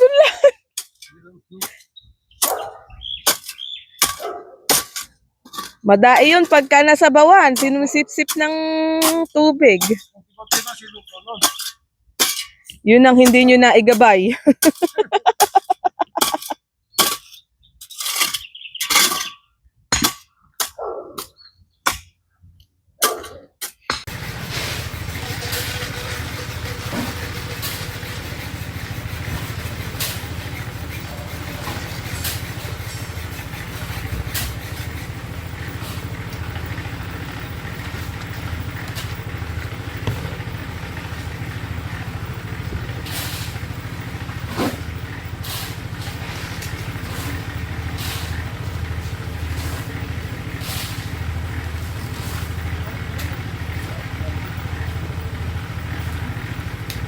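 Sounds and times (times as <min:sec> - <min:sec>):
engine droning: 0:24.1 - 0:57.0.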